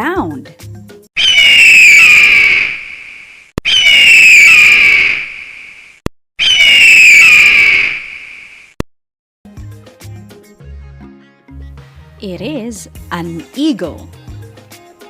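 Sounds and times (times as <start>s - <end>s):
eagle screaming: 1.2s - 5.8s, 6.4s - 8.6s.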